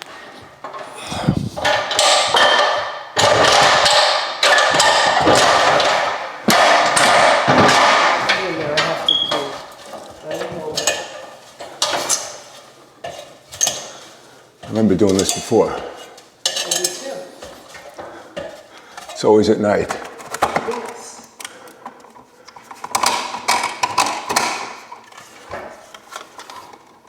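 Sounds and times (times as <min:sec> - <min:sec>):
smoke detector beep: 0:09.1 - 0:09.5.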